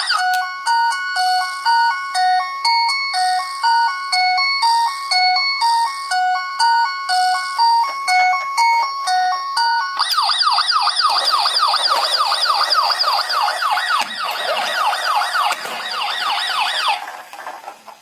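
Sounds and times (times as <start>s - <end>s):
fast repeating siren: 0.0s - 0.4s, 10.0s - 17.2s.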